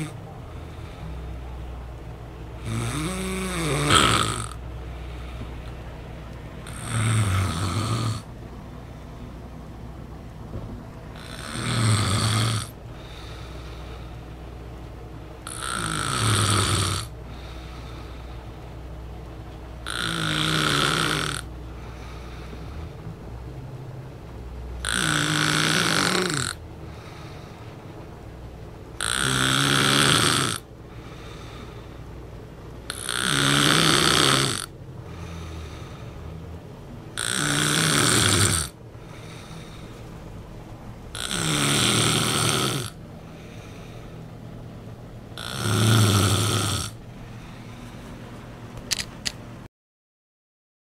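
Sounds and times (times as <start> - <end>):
rattling snores: 0.0 - 1.0, 2.6 - 4.6, 6.6 - 8.4, 11.1 - 14.3, 15.4 - 18.3, 19.8 - 23.0, 24.8 - 27.6, 29.0 - 31.9, 32.8 - 36.5, 37.1 - 40.2, 41.1 - 43.4, 45.3 - 47.4
quiet breathing: 0.0 - 3.9, 4.6 - 9.5, 12.7 - 16.2, 17.0 - 19.3, 21.4 - 23.4, 26.2 - 28.7, 30.6 - 33.4, 34.9 - 36.6, 37.2 - 48.5.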